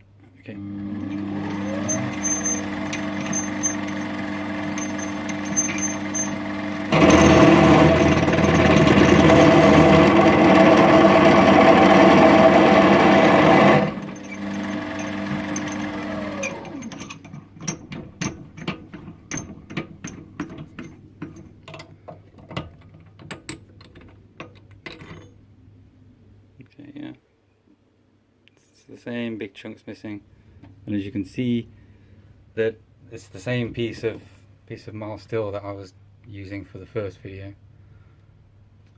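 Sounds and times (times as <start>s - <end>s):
lathe spinning down whine: 0.7s - 16.9s
metal lathe running: 0.7s - 17.2s
drill bit grinding steel: 0.7s - 17.8s
light metal clicks and knocks: 16.7s - 25.4s.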